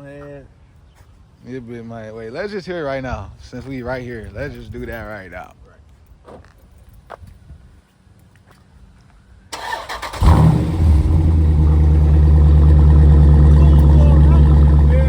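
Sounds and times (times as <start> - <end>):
loud engine idling: 10.2 - 15.0.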